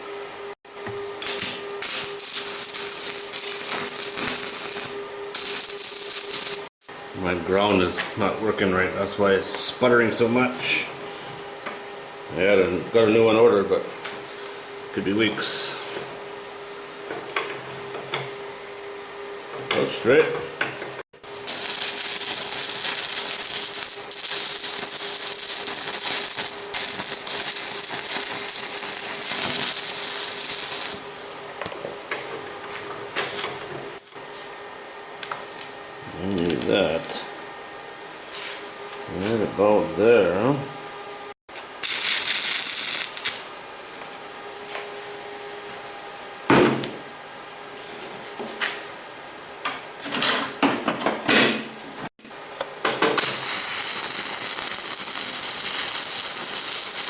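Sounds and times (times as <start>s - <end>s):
arc welder crackling: 1.1s - 6.7s, 21.2s - 31.3s, 41.6s - 43.6s, 53.2s - 57.0s.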